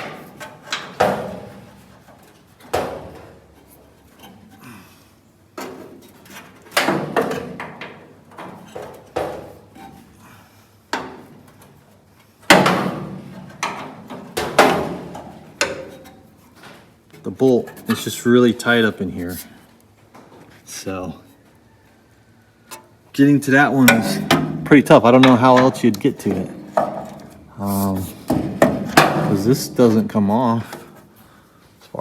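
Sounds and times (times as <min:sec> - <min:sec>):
metal clanks of hand tools: 0:23.7 - 0:27.5.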